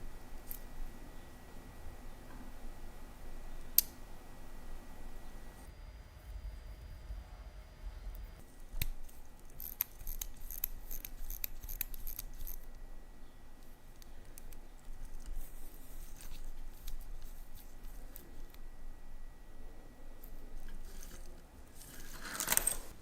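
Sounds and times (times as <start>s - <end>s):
metal tools clicking on watch parts: 8.8s - 12.7s.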